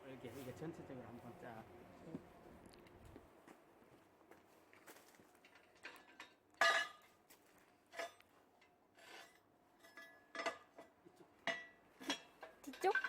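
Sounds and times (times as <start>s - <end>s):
metal parts clanking and scraping: 5.4s - 7.1s, 7.9s - 13.0s.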